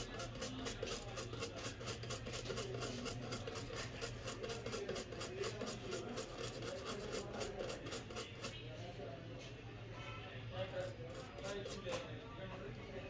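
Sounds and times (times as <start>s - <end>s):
brush scrubbing circuit board: 0.0s - 8.7s, 10.6s - 12.1s.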